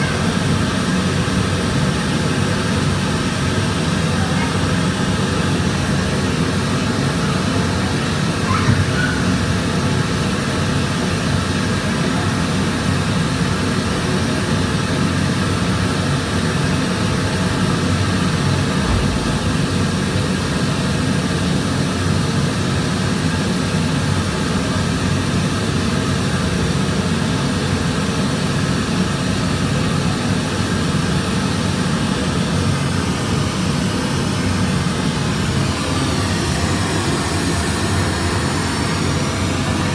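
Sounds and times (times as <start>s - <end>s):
low drone: 17.8s - 21.4s.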